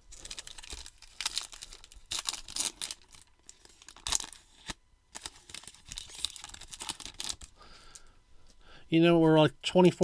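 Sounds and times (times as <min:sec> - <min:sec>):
foil wrapper tearing and crinkling: 0:00.0 - 0:08.0.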